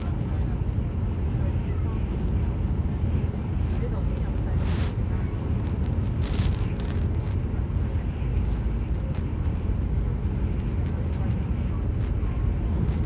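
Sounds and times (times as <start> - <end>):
ferry engine rumble: 0.0 - 13.0.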